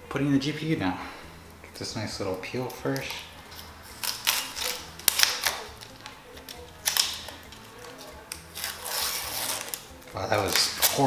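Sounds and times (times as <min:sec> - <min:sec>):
plastic film peeling crackle: 0:02.4 - 0:11.0.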